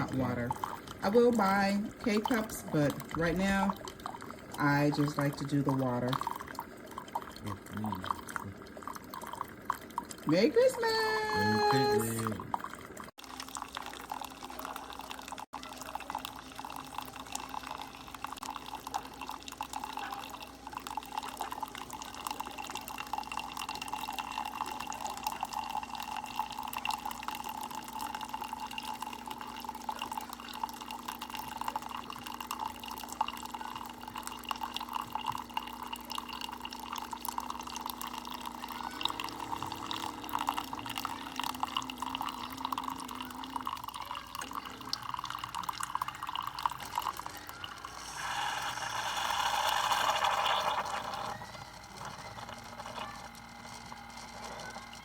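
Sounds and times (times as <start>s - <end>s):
coffee maker humming: 0.0s - 55.0s
water splashing into cup: 11.5s - 55.0s.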